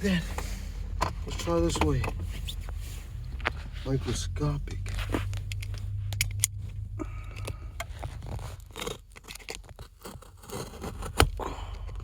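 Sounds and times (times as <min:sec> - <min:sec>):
packaging rustling and scraping: 0:07.9 - 0:11.2.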